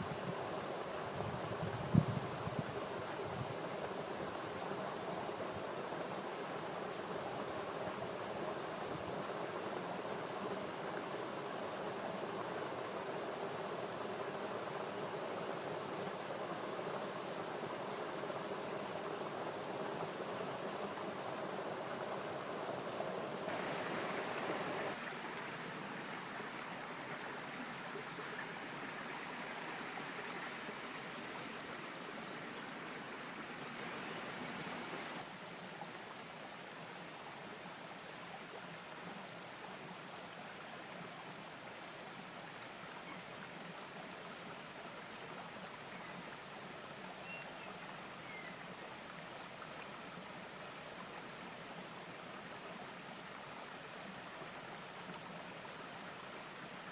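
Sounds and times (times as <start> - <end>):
river water rushing: 15.9 - 35.4.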